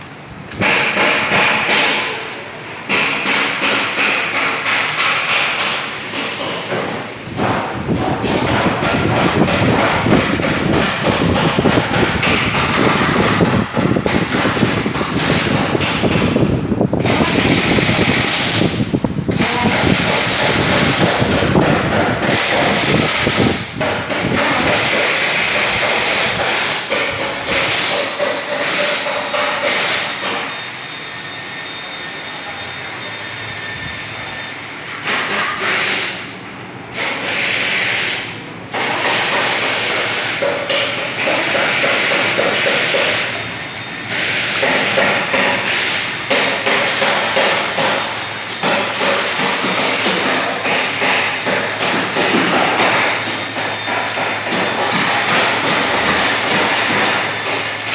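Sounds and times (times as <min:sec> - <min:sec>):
wall fans running: 0:00.0 - 0:57.9
knocks and clatter: 0:02.9 - 0:30.4.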